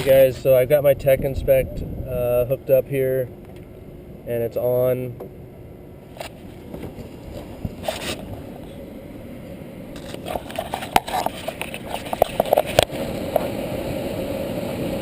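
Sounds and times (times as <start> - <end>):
blower motor running: 6.2 - 15.0
motor clicks and scrapes: 7.3 - 8.4, 10.0 - 13.5.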